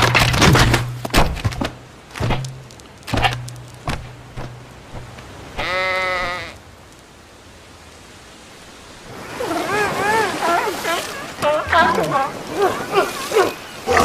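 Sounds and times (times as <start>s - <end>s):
dull knocks: 0.0s - 5.2s
animal bleat: 5.6s - 6.6s.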